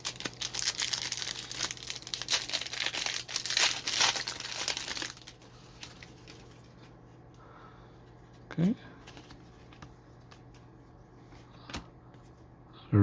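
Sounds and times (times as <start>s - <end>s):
foil wrapper crinkling and tearing: 0.0s - 6.7s.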